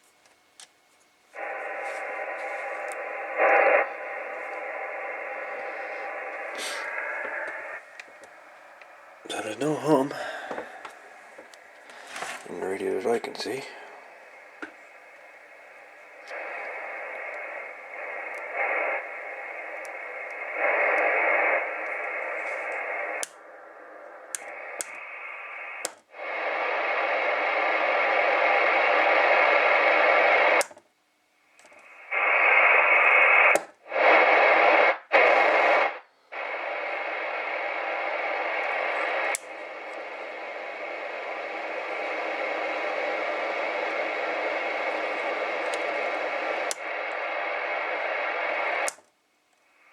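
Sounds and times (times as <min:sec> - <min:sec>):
radio static hiss: 0:00.0 - 0:49.9
sharp clicks: 0:19.8 - 0:23.4, 0:24.3 - 0:25.1, 0:25.8 - 0:26.1, 0:33.1 - 0:33.8, 0:35.1 - 0:49.6.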